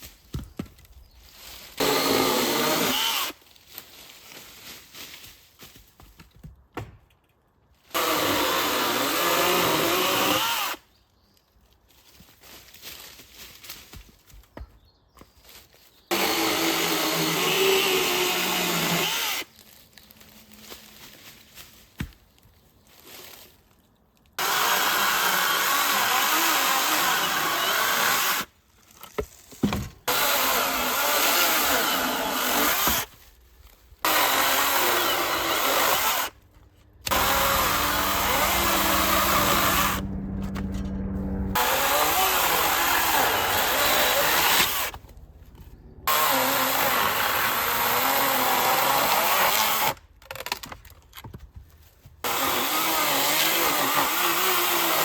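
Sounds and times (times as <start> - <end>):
chainsaw cutting firewood: 1.8 - 3.4, 7.9 - 10.8, 16.1 - 19.6, 24.4 - 28.5, 29.7 - 33.2, 34.0 - 36.4, 37.0 - 45.2, 46.1 - 51.3, 52.2 - 55.0.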